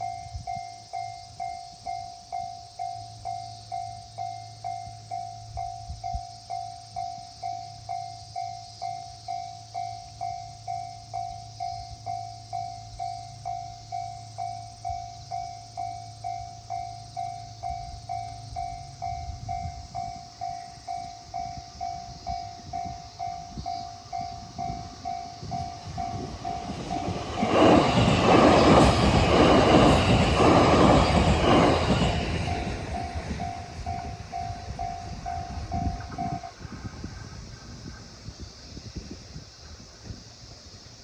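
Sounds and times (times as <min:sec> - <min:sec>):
train wheel clatter: 0:17.8 - 0:38.4.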